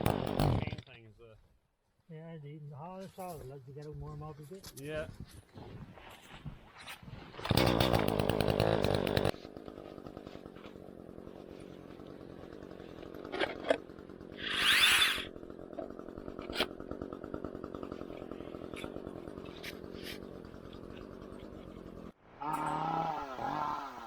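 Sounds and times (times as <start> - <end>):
chainsaw engine revving and idling: 0.0 - 0.9, 7.4 - 24.0.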